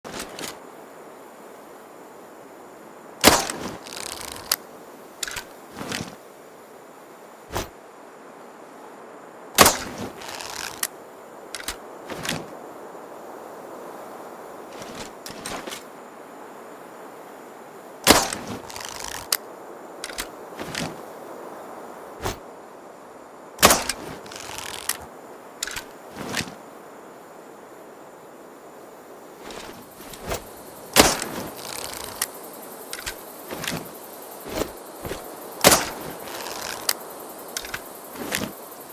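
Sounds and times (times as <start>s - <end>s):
crossbow release snap: 3.2s - 4.6s, 23.6s - 25.0s, 25.6s - 26.6s, 32.9s - 33.9s, 34.6s - 37.0s, 37.6s - 38.5s.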